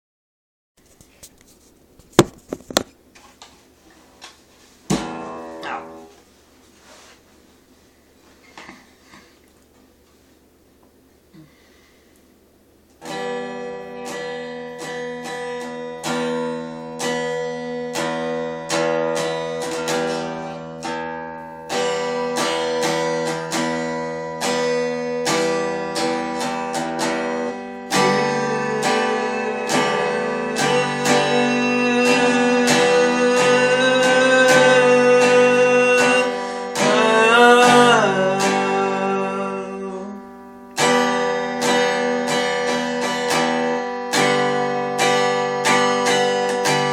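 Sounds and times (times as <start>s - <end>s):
acoustic guitar playing: 4.9s - 7.0s, 13.0s - 46.9s.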